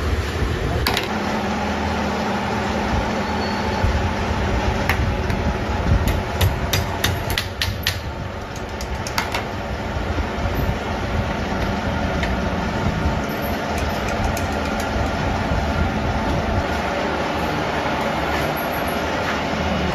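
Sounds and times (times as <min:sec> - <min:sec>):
workshop machinery running: 0:00.0 - 0:19.9
metallic clicks and taps: 0:13.7 - 0:15.2.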